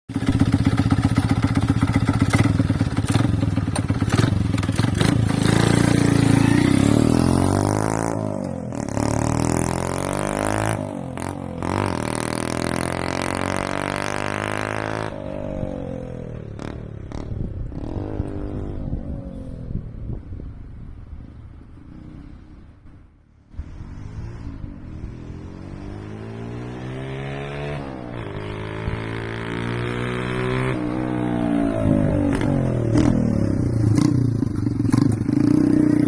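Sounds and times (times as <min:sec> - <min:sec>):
small engine revving: 0:23.5 - 0:36.0.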